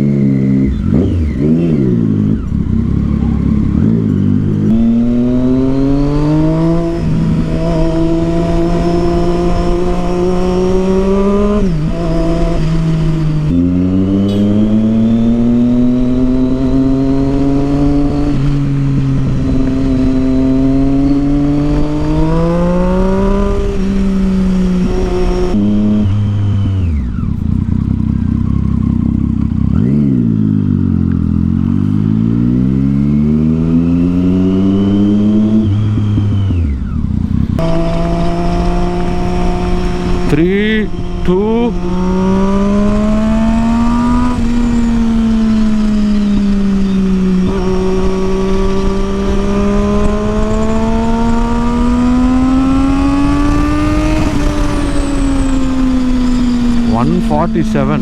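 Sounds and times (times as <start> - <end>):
motorcycle engine accelerating: 0.0 - 58.0.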